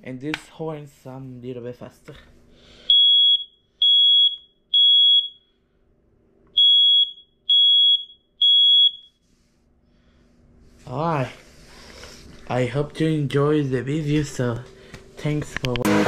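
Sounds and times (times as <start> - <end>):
smoke alarm high-pitched beeps: 2.9 - 5.6, 6.5 - 9.2.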